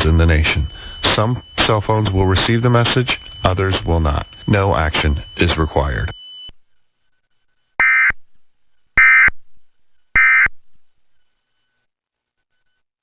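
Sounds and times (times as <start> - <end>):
two-tone digital data warble: 0.0 - 6.3, 7.8 - 8.2, 10.2 - 10.5.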